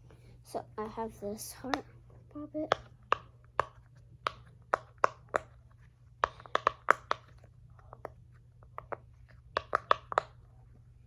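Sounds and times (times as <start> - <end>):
fidget toy bubbles popping: 6.2 - 10.4.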